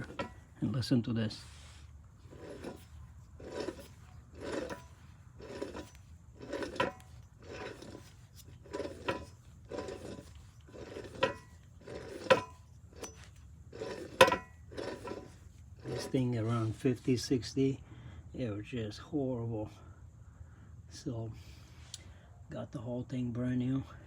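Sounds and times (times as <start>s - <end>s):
wheel bearing grinding: 0.0s - 0.6s, 1.3s - 17.0s.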